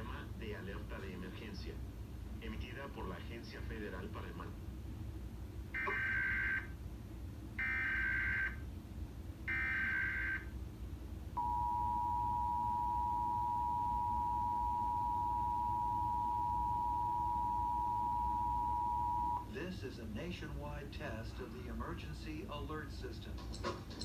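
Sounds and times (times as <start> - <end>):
steady two-tone attention signal: 11.4 - 19.4.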